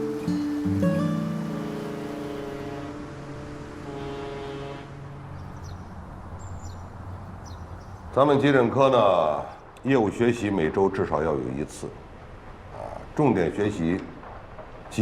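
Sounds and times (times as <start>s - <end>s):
guitar music: 0.0s - 3.9s.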